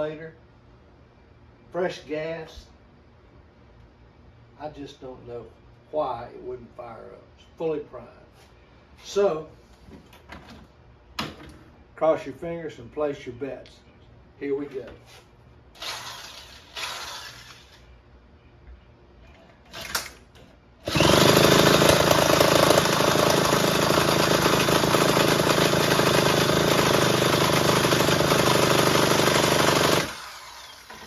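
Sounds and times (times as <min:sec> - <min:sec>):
electric drill cranking engine: 0:15.8 - 0:17.8, 0:19.7 - 0:20.2, 0:20.8 - 0:31.0.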